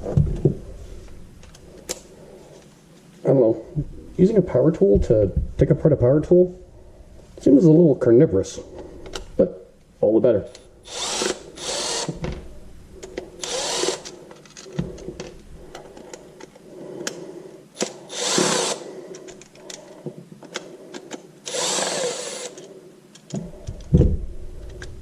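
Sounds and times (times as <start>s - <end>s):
power drill running: 10.8s - 12.3s, 13.4s - 14.1s, 17.8s - 18.9s, 21.4s - 22.6s
clicks and knocks of parts: 13.0s - 17.2s, 17.8s - 24.0s.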